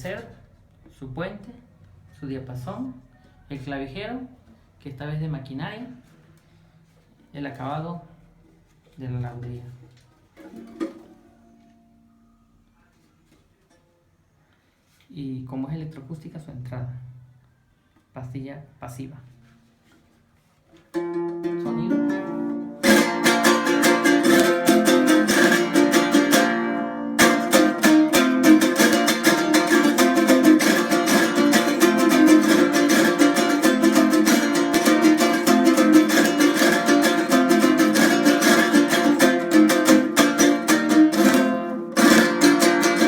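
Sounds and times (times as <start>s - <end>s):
small guitar strummed: 20.9s - 43.0s.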